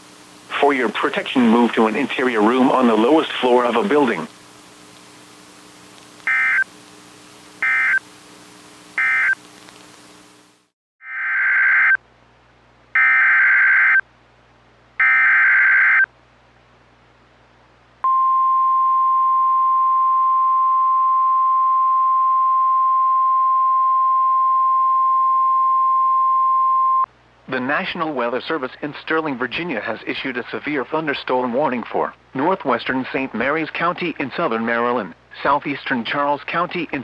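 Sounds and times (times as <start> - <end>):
screeching digital data bursts: 6.2 - 6.7, 7.6 - 8.0, 9.0 - 9.4
steady warning alarm tone: 6.2 - 6.7, 7.6 - 8.1, 9.0 - 9.4.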